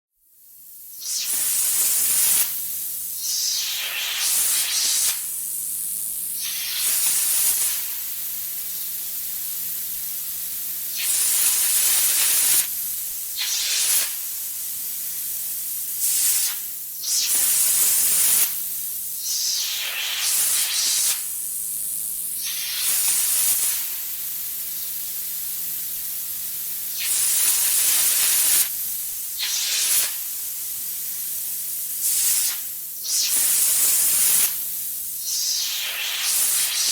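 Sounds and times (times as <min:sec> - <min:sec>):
iguana hissing: 0:35.3 - 0:36.9.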